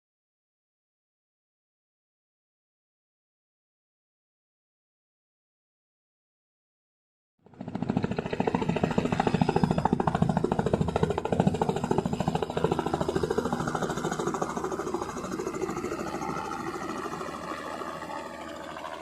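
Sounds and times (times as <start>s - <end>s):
helicopter rotor pulsing: 7.4s - 19.0s.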